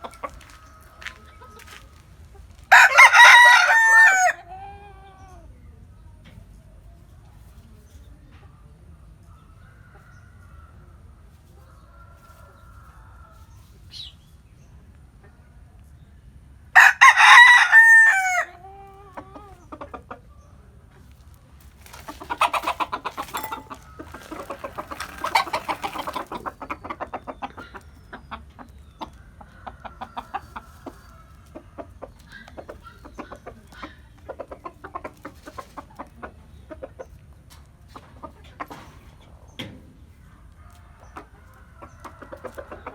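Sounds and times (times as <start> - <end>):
chickens clucking: 0.0 - 42.9
rooster crowing: 2.7 - 4.8, 16.8 - 18.6.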